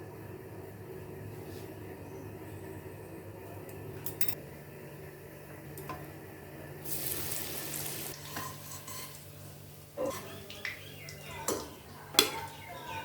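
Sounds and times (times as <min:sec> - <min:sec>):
food sizzling in hot oil: 0:06.8 - 0:09.6.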